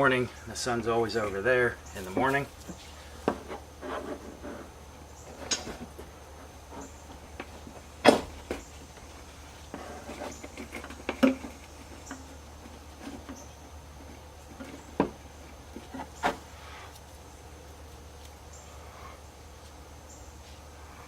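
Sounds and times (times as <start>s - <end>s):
low steady hum: 0.0s - 21.0s
small clicks and scratches: 8.5s - 14.9s.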